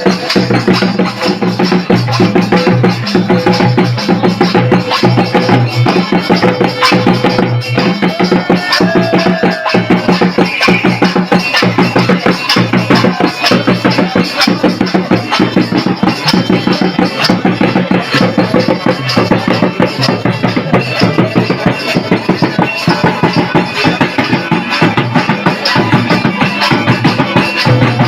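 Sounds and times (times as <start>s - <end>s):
drums beating fast rhythm: 0.0s - 28.0s
folk music instruments: 7.3s - 28.0s.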